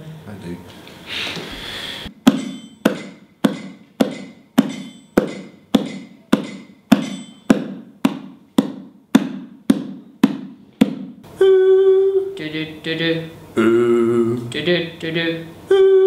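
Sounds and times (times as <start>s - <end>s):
stick knocking steady tempo: 2.1s - 11.3s.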